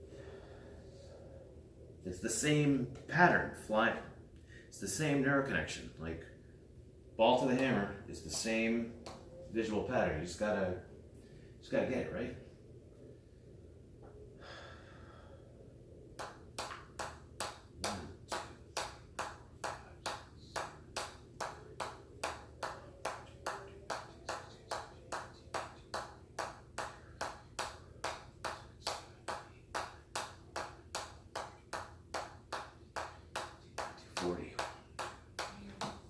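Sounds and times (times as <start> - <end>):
ball bouncing on hammer pings: 16.2 - 36.0.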